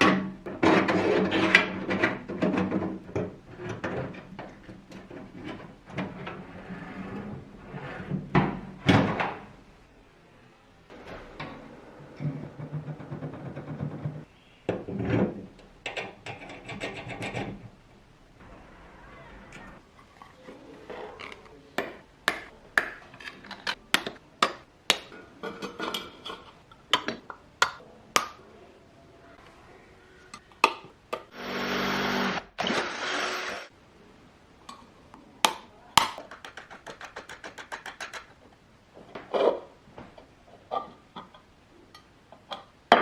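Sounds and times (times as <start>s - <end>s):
power tool running: 31.3s - 33.7s.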